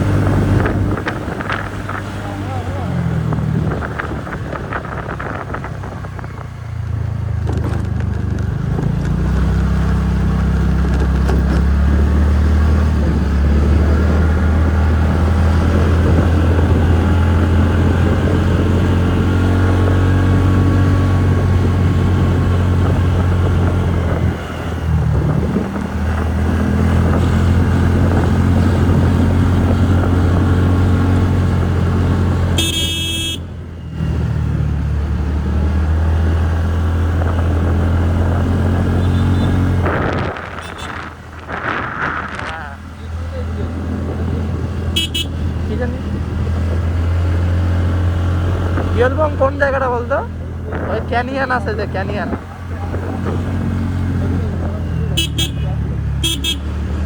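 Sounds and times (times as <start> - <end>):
scooter engine running: 27.1 - 35.1, 45.0 - 46.0.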